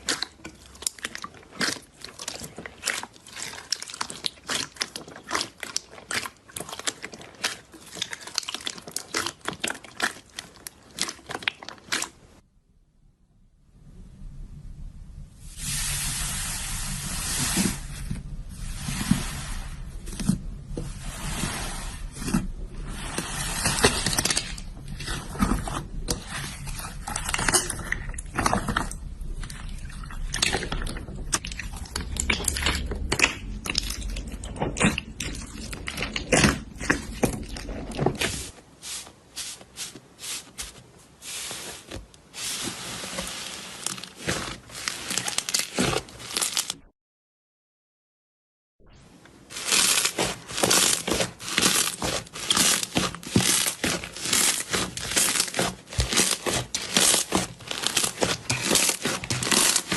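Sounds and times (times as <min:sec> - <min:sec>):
slime wet crackling: 0:00.0 - 0:12.4, 0:23.0 - 0:38.5, 0:41.5 - 0:46.8, 0:49.5 - 0:59.9.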